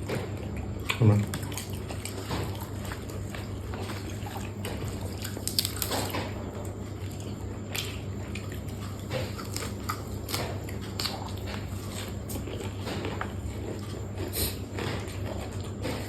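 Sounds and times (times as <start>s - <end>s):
person chewing food: 0.0s - 16.0s
steady low hum: 0.0s - 16.0s.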